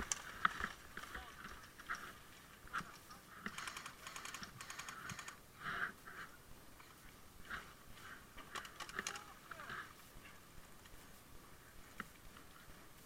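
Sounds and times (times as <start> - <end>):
airsoft guns firing rapid clicks: 0.0 - 0.8, 3.4 - 5.4.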